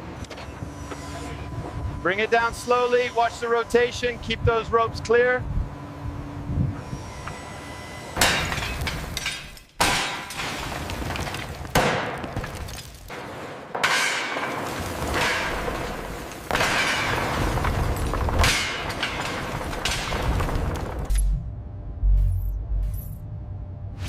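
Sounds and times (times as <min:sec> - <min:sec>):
crashing shattering impacts: 0:08.2 - 0:21.2.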